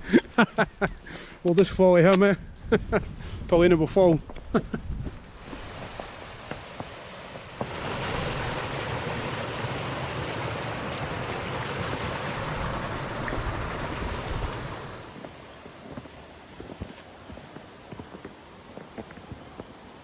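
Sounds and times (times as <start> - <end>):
wind gust rushing over microphone: 2.4 - 6.8, 7.5 - 15.1.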